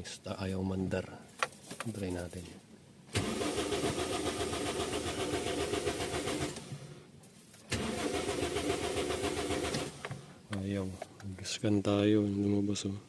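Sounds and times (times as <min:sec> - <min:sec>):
car engine cranking without starting: 0:03.1 - 0:07.0, 0:07.6 - 0:11.3.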